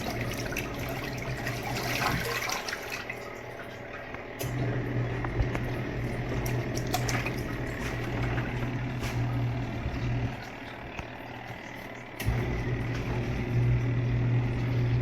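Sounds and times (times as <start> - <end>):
washing machine motor running: 0.0 - 15.0
water churning in a tub: 0.0 - 15.0.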